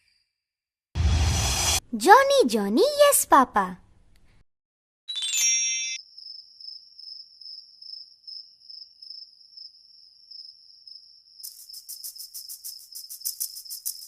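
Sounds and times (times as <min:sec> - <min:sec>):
rapid pulsing cricket chirp: 0:06.1 - 0:14.0
crickets trilling: 0:06.2 - 0:14.0.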